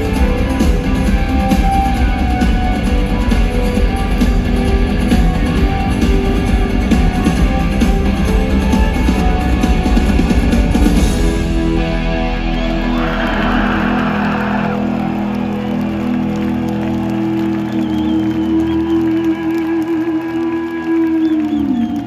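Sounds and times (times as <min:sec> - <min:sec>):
drums: 0:00.0 - 0:15.8
faint crowd whoops: 0:12.6 - 0:20.0, 0:20.8 - 0:22.0.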